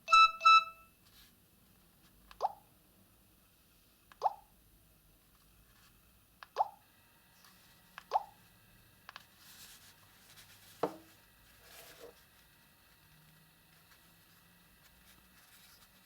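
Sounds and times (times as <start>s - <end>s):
phone keypad tones: 0.0s - 0.9s.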